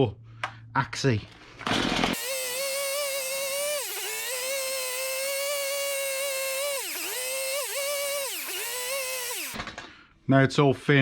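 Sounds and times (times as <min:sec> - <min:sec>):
power carving tool whining: 0:02.2 - 0:09.6.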